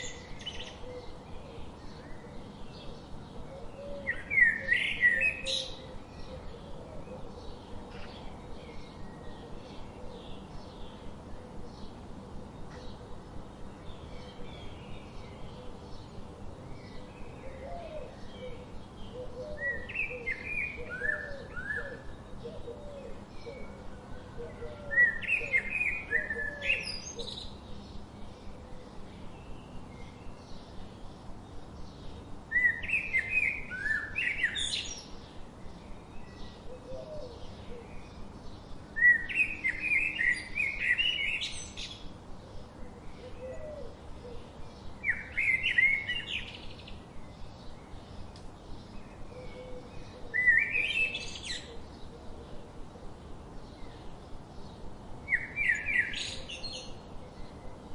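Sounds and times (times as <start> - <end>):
songbird whistling song: 0.0 - 3.0, 3.6 - 7.3, 16.8 - 27.6, 32.5 - 35.2, 39.0 - 42.1, 43.2 - 52.1, 55.3 - 57.8
faint bird chirps: 0.0 - 11.9.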